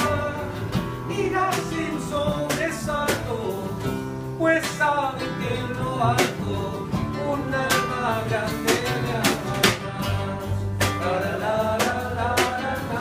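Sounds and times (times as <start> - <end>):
bass line: 0.0 - 13.0
guitars playing melody: 0.0 - 13.0.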